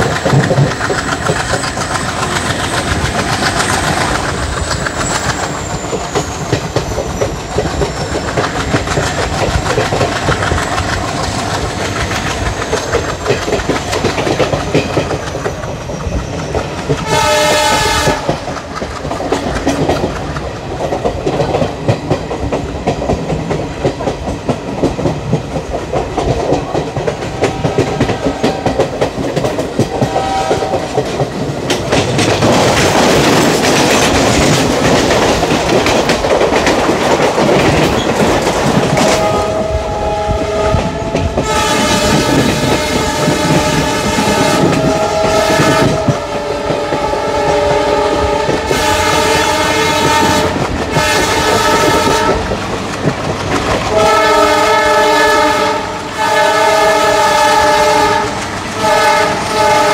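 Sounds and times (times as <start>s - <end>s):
train wheels clicking on rail joints: 0.0s - 59.9s
locomotive horn: 17.0s - 18.5s, 27.3s - 28.9s, 29.8s - 31.1s, 39.0s - 52.6s, 53.9s - 59.9s.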